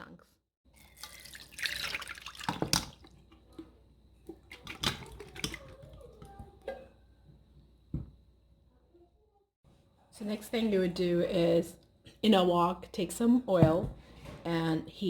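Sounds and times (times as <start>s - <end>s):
juice pouring from a can: 0.8s - 3.7s.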